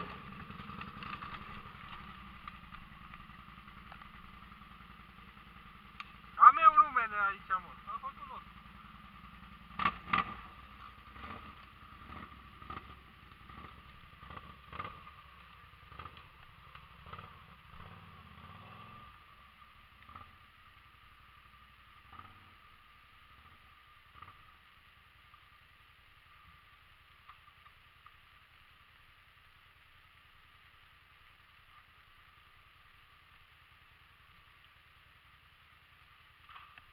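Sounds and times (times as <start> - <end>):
quad bike engine running: 0.0 - 36.9.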